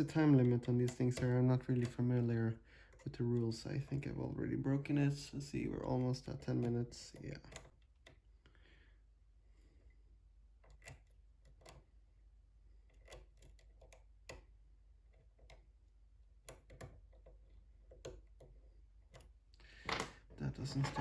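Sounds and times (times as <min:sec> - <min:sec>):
lock pick clicks: 0:12.9 - 0:14.5.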